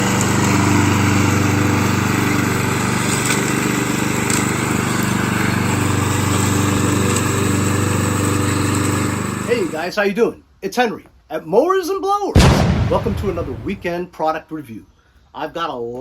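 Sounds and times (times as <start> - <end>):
small engine running: 0.0 - 9.8.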